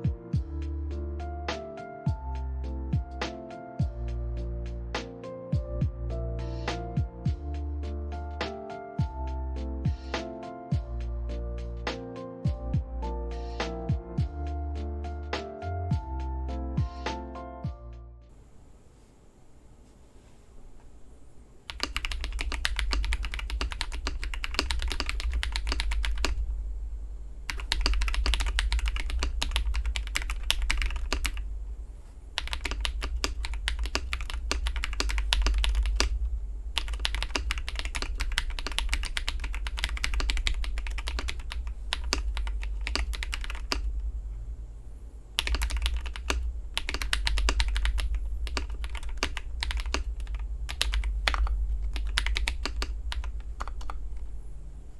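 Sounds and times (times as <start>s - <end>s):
mechanical keyboard typing: 21.7s - 26.4s, 27.5s - 31.4s, 32.4s - 36.2s, 36.8s - 44.0s, 45.4s - 54.3s.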